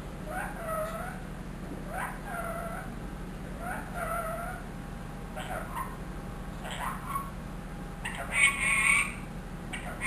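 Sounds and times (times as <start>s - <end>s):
parakeet mimicked call: 0.3s - 1.2s, 1.9s - 3.0s, 3.6s - 4.7s, 5.4s - 6.0s, 6.6s - 7.4s, 8.0s - 10.0s.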